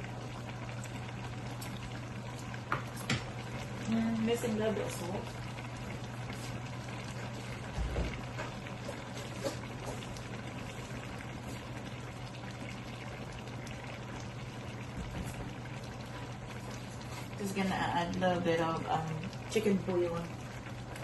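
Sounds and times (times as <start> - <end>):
vegetables simmering in a pan: 0.0 - 21.0.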